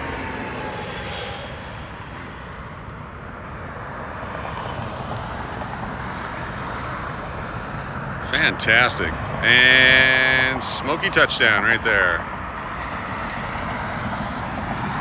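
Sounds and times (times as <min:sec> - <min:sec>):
jet engines rushing: 0:08.0 - 0:15.0.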